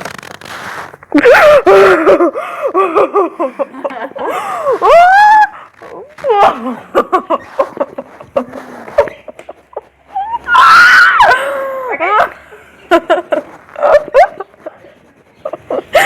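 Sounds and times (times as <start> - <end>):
girl squealing: 4.8 - 6.7, 10.1 - 12.4
girl screaming high-pitched: 10.4 - 12.3.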